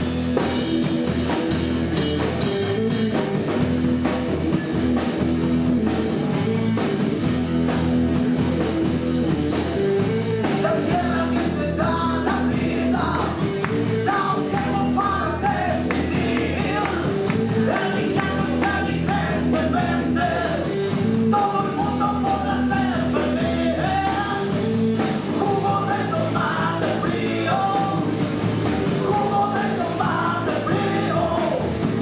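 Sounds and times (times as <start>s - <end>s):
blues-rock band playing: 0.0s - 32.0s
person singing lead vocal: 10.0s - 32.0s.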